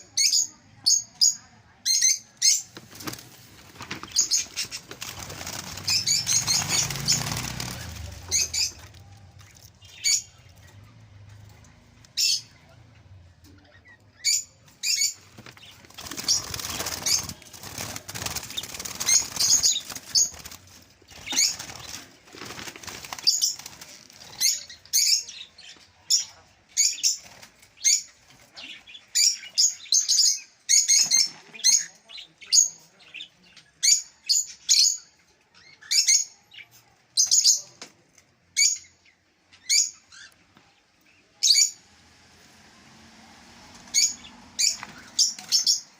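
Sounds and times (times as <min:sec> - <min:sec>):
small birds chirping: 0:00.0 - 0:42.8, 0:43.7 - 0:45.9
wings fluttering: 0:02.7 - 0:10.9, 0:14.9 - 0:24.8, 0:42.3 - 0:45.9.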